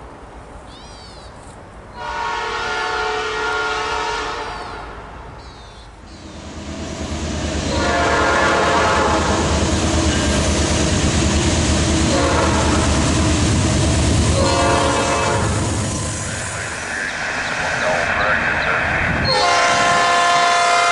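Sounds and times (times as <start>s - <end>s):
train passing close by: 1.9s - 20.9s
train horn blasts: 2.0s - 5.0s, 7.6s - 10.5s, 12.0s - 13.2s, 14.3s - 15.8s, 19.2s - 20.9s.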